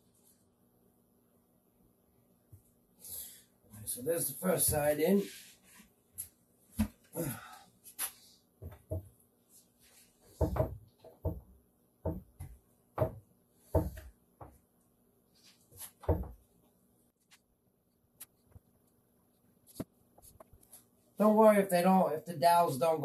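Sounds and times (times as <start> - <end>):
wooden panels knocking and thudding: 8.6 - 9.2, 10.3 - 14.6, 15.8 - 16.4.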